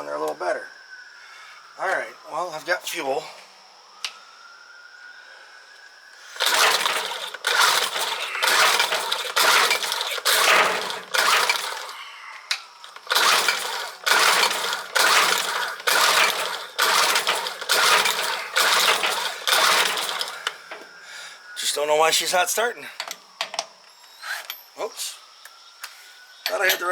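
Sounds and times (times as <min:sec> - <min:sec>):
outboard motor recoil starter pulls: 0:06.3 - 0:12.0, 0:12.8 - 0:20.8.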